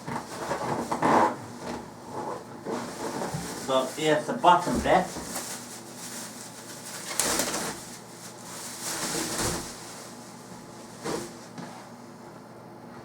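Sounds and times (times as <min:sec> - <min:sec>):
packaging rustling and scraping: 0:00.1 - 0:10.3.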